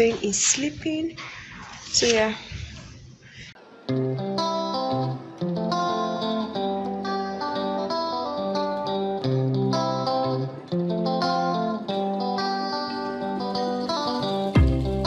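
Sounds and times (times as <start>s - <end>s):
plucked guitar melody: 3.8s - 15.0s.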